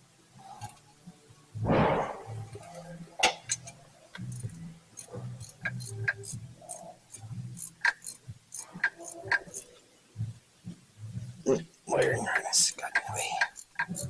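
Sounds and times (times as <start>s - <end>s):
low hum: 1.6s - 2.7s
metal tools clicking and clinking: 2.6s - 9.7s.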